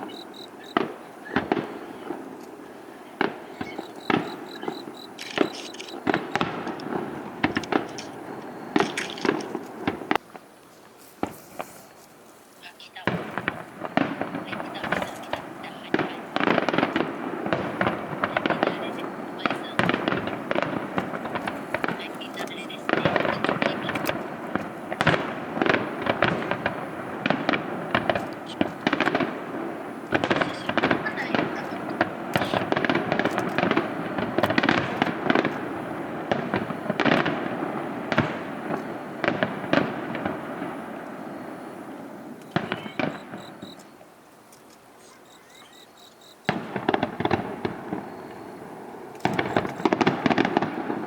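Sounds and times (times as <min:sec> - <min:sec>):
fireworks bangs: 0:00.0 - 0:51.0.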